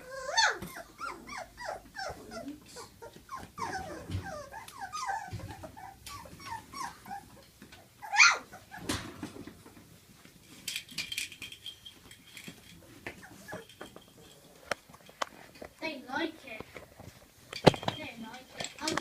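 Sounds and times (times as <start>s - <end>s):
puppies whimpering and yipping: 0.0s - 8.9s, 13.0s - 13.9s.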